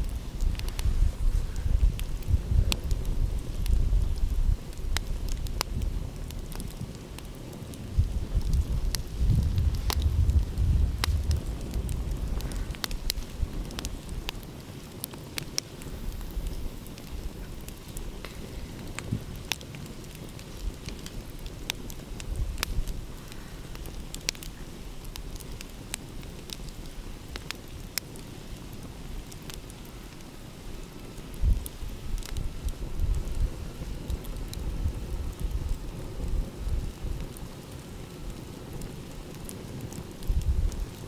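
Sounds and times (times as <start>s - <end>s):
wood fire crackling: 0.0s - 41.0s
low rumble: 8.0s - 13.8s.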